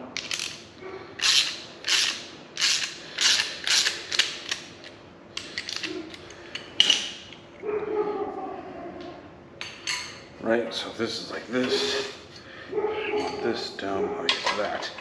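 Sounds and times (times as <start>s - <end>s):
metal scraping ratchet-like strokes: 1.2s - 4.6s.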